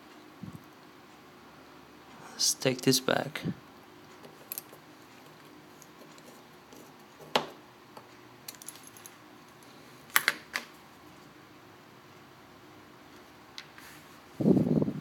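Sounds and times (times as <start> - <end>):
small tools clicking and tapping: 4.2 - 9.1.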